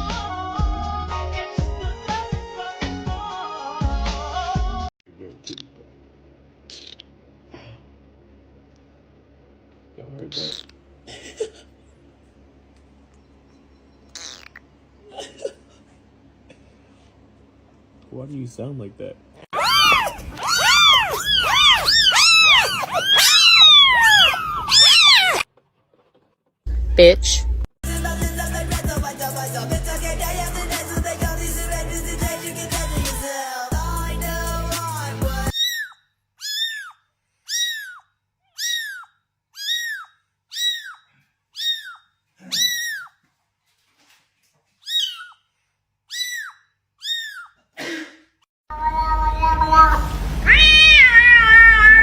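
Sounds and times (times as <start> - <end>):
cat crying high-pitched: 19.6 - 25.5, 35.5 - 43.2, 44.8 - 45.4, 46.1 - 47.6, 48.7 - 52.0.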